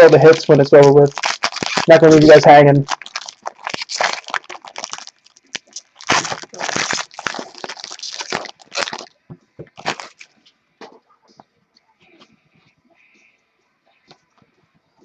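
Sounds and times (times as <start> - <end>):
packaging crinkling and crackling: 0.0 - 11.0.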